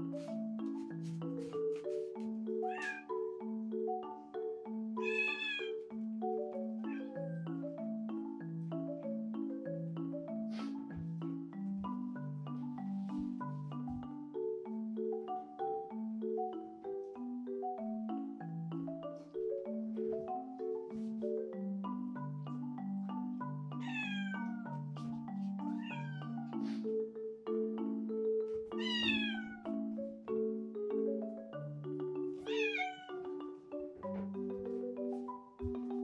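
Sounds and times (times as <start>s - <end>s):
light mallet music: 0.0s - 36.0s
cat meowing: 2.7s - 3.0s, 5.0s - 5.7s, 23.8s - 24.4s, 25.8s - 26.3s, 28.8s - 29.6s, 32.5s - 33.1s.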